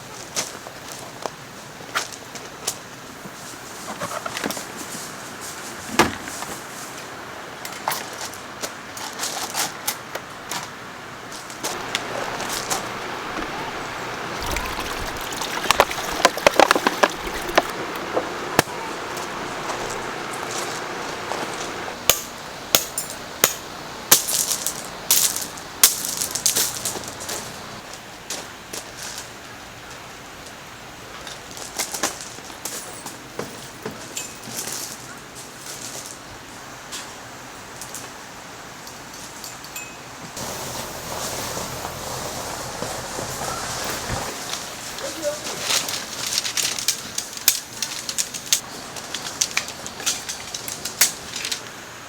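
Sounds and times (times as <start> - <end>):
steady hiss: 11.4 - 28.0, 40.4 - 52.0.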